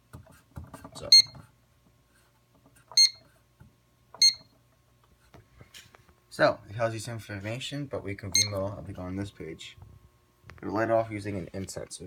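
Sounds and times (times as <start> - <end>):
keypad high beeps: 1.1 - 1.4, 3.0 - 3.2, 4.2 - 4.5.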